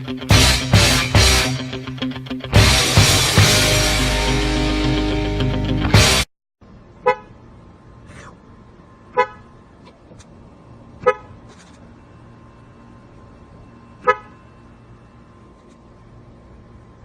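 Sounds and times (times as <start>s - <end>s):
low steady hum: 6.6s - 17.0s
vehicle horn toots: 7.0s - 7.3s, 9.1s - 9.5s, 11.0s - 11.4s, 14.0s - 14.4s.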